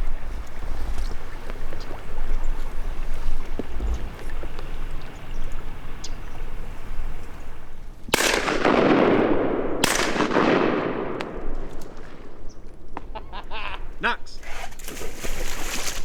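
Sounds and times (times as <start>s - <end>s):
shotgun shots echoing: 8.1s - 13.2s.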